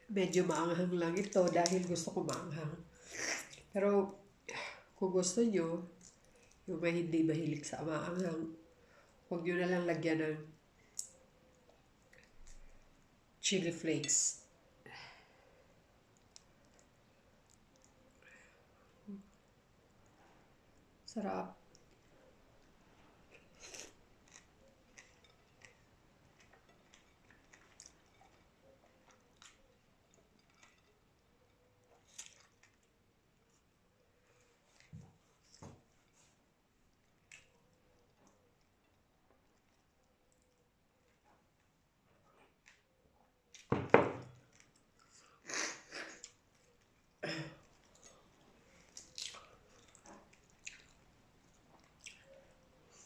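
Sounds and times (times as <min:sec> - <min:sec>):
wet chewing and mouth clicks: 0:21.6 - 0:33.8, 0:36.8 - 0:41.8, 0:44.4 - 0:45.4, 0:46.1 - 0:53.0.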